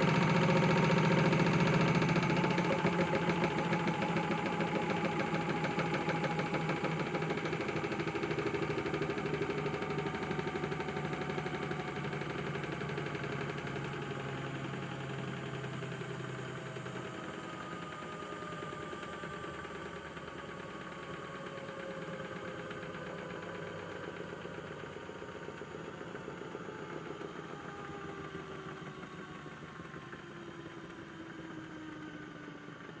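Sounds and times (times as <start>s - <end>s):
toy washing machine motor humming: 0.0s - 17.8s.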